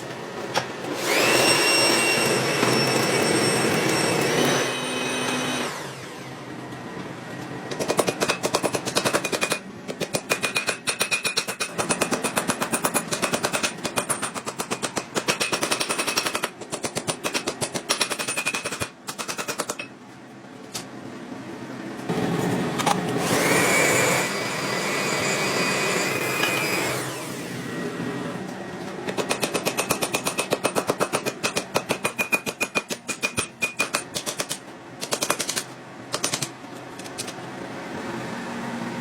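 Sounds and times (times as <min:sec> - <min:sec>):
power hammer pounding steel: 0:07.7 - 0:19.9, 0:29.1 - 0:36.5.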